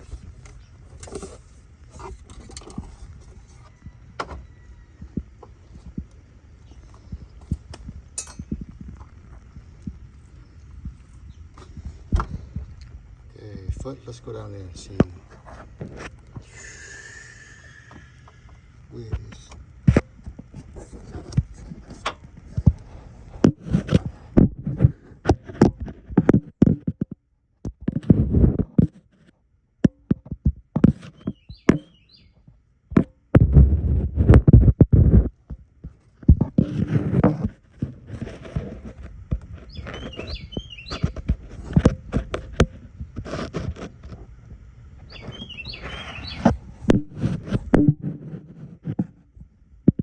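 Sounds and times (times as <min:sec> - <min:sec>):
bird chirps: 0:31.1 - 0:32.4, 0:39.7 - 0:41.2, 0:45.1 - 0:47.0.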